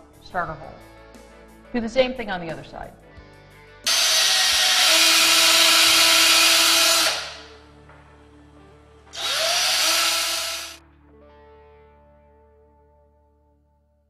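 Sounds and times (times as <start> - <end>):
power drill running: 3.9 - 7.5, 9.2 - 10.8.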